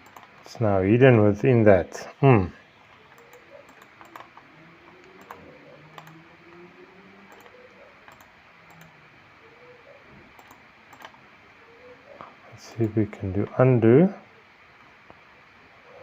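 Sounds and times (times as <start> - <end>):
computer keyboard and mouse clicking: 0.0 - 0.4, 2.9 - 6.2, 7.2 - 9.0, 10.4 - 11.2.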